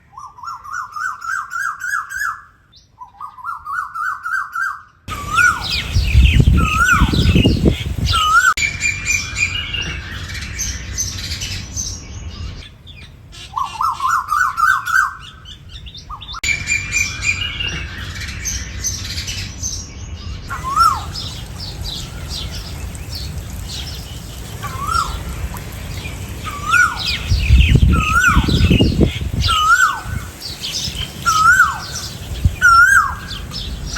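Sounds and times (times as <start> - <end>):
small birds chirping: 0.1 - 33.9
koels calling: 3.4 - 10.5, 12.6 - 19.3, 20.5 - 33.9
low rumbles: 5.1 - 8.4, 20.4 - 33.9.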